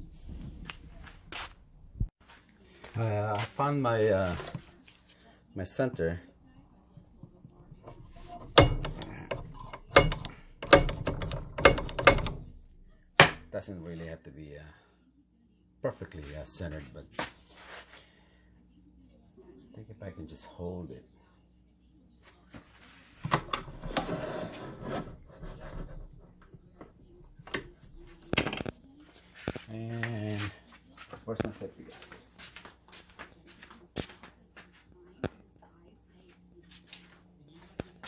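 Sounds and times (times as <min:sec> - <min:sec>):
clicking and rattling metal: 0:07.8 - 0:12.5
metal scraping and rubbing: 0:23.1 - 0:26.5.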